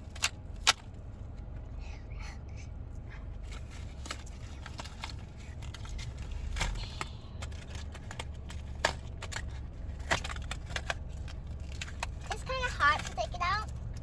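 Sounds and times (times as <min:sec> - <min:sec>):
car cabin rumble: 0:00.0 - 0:14.0
plastic packaging crinkling and snapping: 0:03.5 - 0:14.0.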